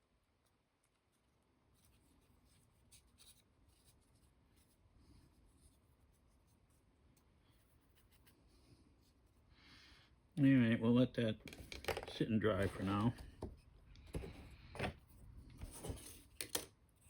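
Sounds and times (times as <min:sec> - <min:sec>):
wooden parts clicking: 0:11.4 - 0:12.2.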